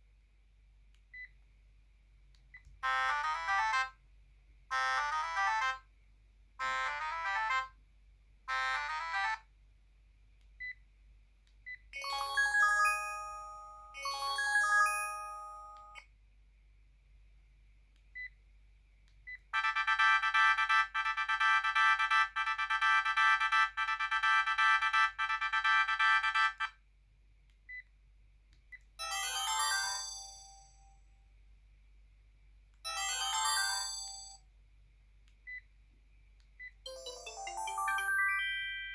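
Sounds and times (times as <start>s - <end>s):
mobile phone ringtones: 19.6s - 26.7s, 36.9s - 38.9s.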